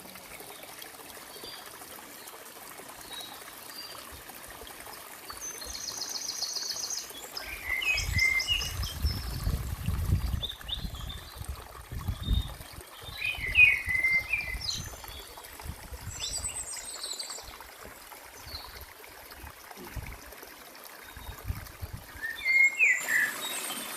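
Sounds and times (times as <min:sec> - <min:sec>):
stream trickling: 0:00.0 - 0:23.9
birds singing: 0:05.3 - 0:11.5, 0:12.1 - 0:15.4, 0:16.0 - 0:17.6, 0:22.1 - 0:23.9.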